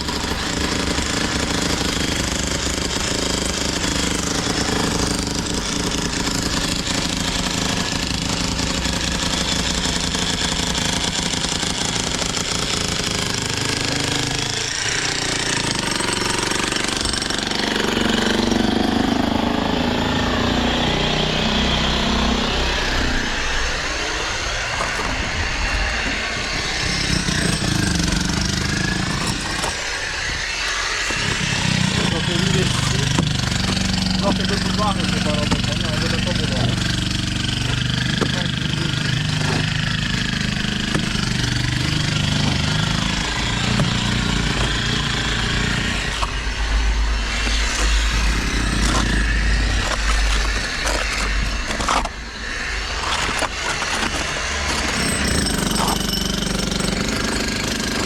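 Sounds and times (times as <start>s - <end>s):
power hammer hammering: 0.0s - 19.7s, 26.0s - 30.0s, 30.9s - 46.5s, 47.3s - 52.2s, 53.0s - 58.0s
engine running: 19.3s - 55.9s.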